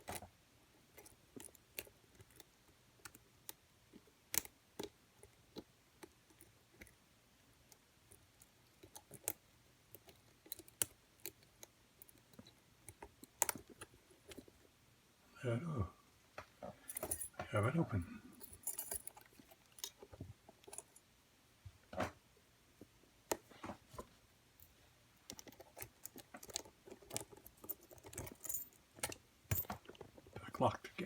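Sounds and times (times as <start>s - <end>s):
lock pick metallic clicks: 25.3s - 30.0s.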